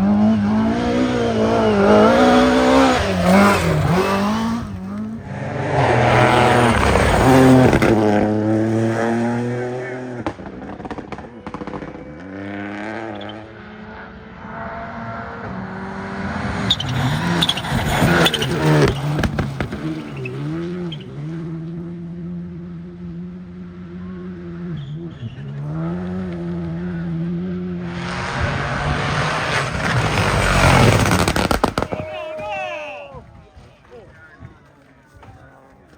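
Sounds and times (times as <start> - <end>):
rally car engine racing: 0.0 - 35.9
tyre noise: 0.1 - 9.4, 16.5 - 21.5, 27.8 - 35.9.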